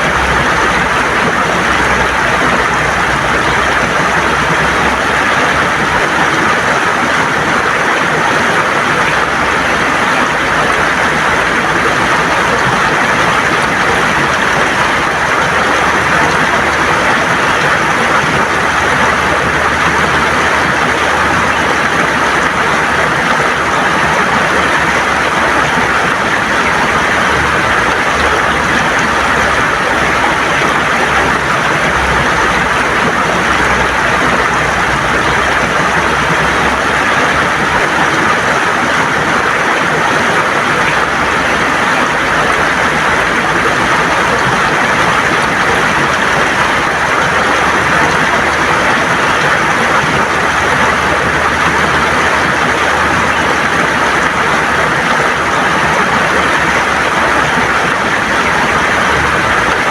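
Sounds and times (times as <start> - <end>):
river flowing over stones: 0.0 - 59.9.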